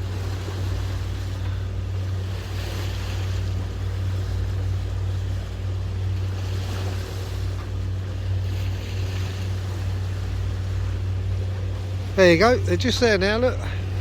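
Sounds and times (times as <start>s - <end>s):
boat engine droning: 0.0s - 14.0s
water washing past hulls: 0.0s - 14.0s
wind on microphone: 0.0s - 14.0s.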